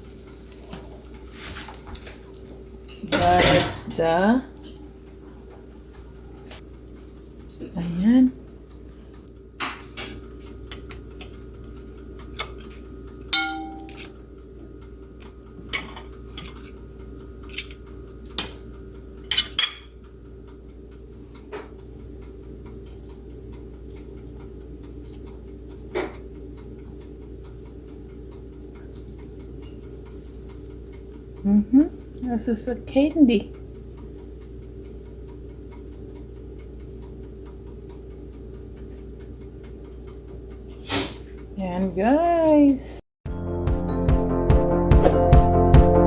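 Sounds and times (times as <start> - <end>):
steady low hum: 0.0 - 43.0
dishes and utensils clattering: 0.5 - 8.2, 9.7 - 14.2, 15.6 - 20.0.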